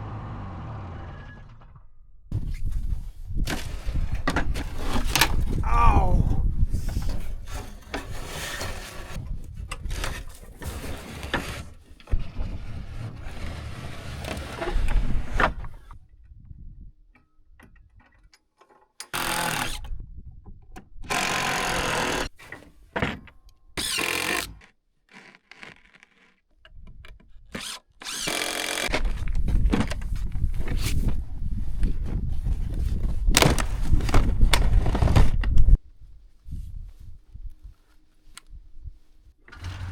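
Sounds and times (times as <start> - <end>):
power tool motor bursts: 19.1 - 19.8, 21.1 - 22.3, 23.8 - 24.6, 27.6 - 28.9.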